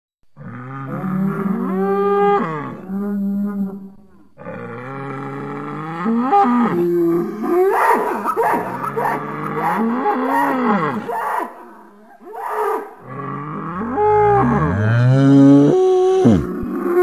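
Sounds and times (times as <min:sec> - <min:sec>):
bull mooing: 0:04.4 - 0:17.0.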